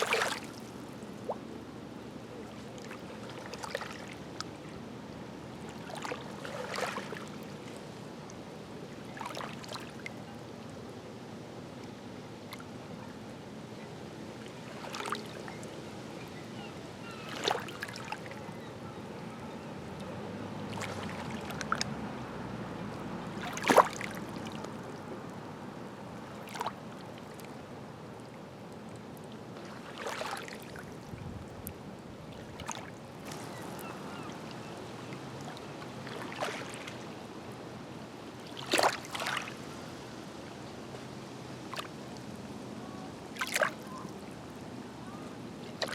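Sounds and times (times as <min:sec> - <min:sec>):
water slaps and splashes: 0:00.0 - 0:00.7, 0:02.8 - 0:04.5, 0:05.7 - 0:07.4, 0:14.8 - 0:15.4, 0:17.3 - 0:18.4, 0:20.6 - 0:22.2, 0:23.2 - 0:25.1, 0:26.4 - 0:27.5, 0:29.6 - 0:30.8, 0:32.4 - 0:37.1, 0:38.4 - 0:39.6, 0:43.4 - 0:44.0
waves lapping at shore: 0:00.0 - 0:45.9.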